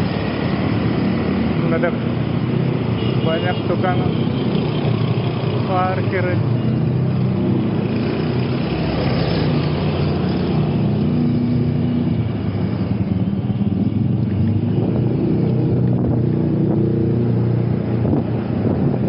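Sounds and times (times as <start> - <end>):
car and motorcycle engines: 0.0 - 19.0
tyre and road noise: 0.0 - 19.0.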